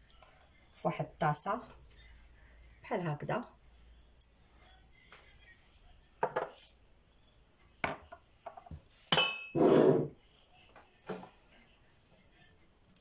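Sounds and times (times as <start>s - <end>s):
spoon scraping bowl: 9.4s - 10.2s.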